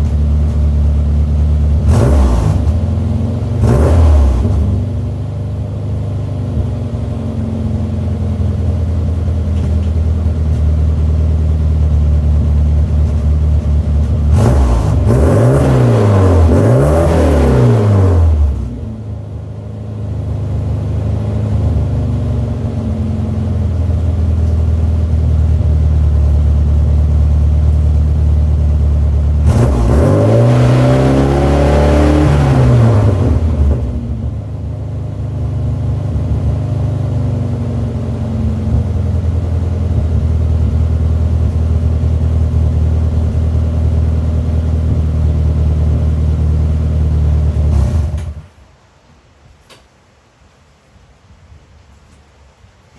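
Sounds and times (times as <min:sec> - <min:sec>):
car engine idling and revving: 0:00.0 - 0:48.5.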